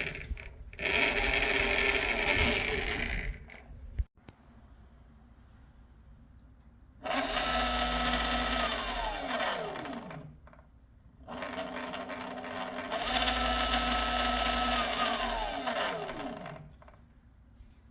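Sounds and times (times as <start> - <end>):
electric motor whining: 0.0 - 3.5, 7.1 - 10.2, 11.3 - 16.6.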